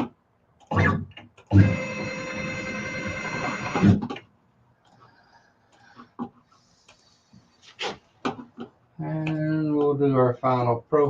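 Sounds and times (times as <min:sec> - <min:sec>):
stepper motors whining: 0:00.7 - 0:04.2.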